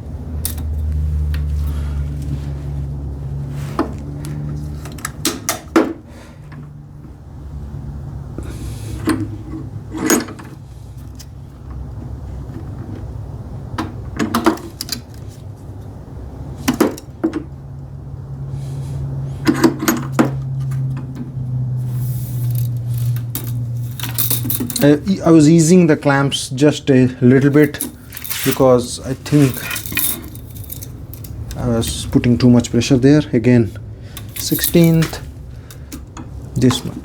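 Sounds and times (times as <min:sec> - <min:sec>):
steady low hum: 0:15.2 - 0:37.0.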